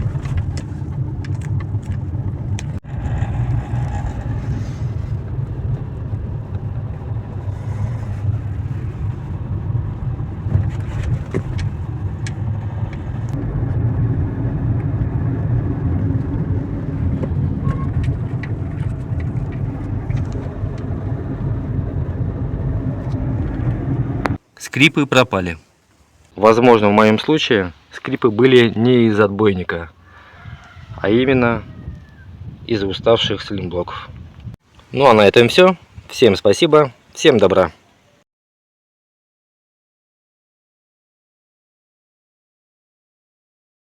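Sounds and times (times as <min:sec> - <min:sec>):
car road rumble: 0:00.0 - 0:24.5.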